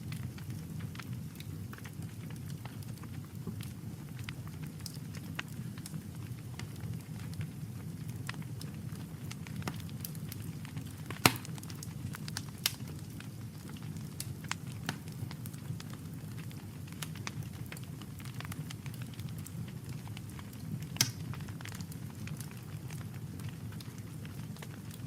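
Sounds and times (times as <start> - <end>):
campfire crackling: 0.0 - 25.0
sharp fire pops: 11.0 - 11.9, 21.0 - 21.4.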